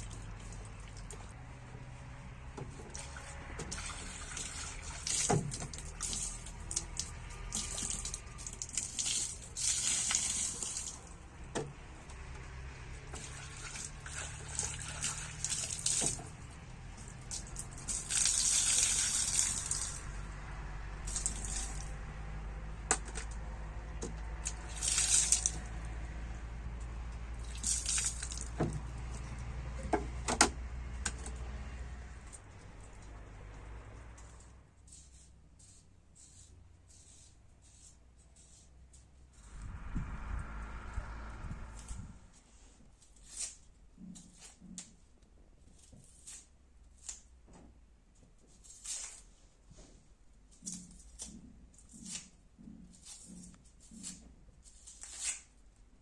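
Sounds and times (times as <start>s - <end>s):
water pouring in spurts: 0.0s - 1.3s, 2.9s - 11.3s, 13.1s - 20.2s, 21.0s - 22.0s, 24.4s - 25.8s, 27.4s - 29.4s.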